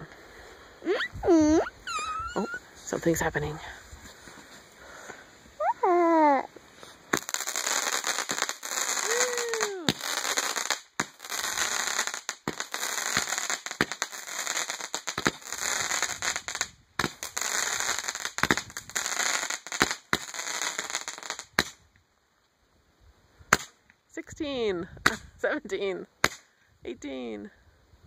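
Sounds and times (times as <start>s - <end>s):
fireworks hissing and crackling: 0.0s - 21.8s
sharp firework pops: 7.1s - 14.1s, 15.0s - 21.9s, 23.5s - 24.0s, 25.0s - 25.3s, 26.2s - 26.5s.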